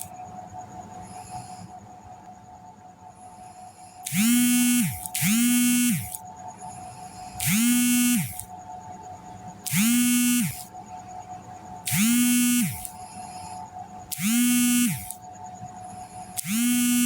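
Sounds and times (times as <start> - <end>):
faint hum: 0.0 - 17.0
buzzy snoring: 4.0 - 6.2, 7.3 - 8.5, 11.9 - 13.0, 14.1 - 15.2, 16.3 - 17.0.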